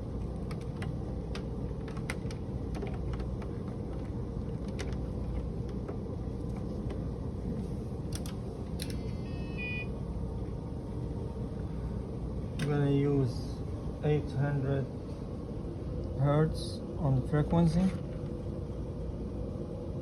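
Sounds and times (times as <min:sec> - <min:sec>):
steady equipment hum: 0:00.0 - 0:20.0
short electronic beeps: 0:09.2 - 0:09.9.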